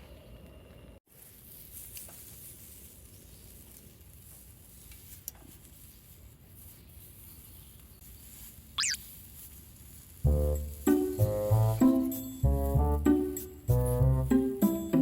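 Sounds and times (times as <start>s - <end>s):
outdoor background hiss: 0.0s - 15.0s
quick rising chirp: 8.8s - 9.0s
music: 10.2s - 15.0s.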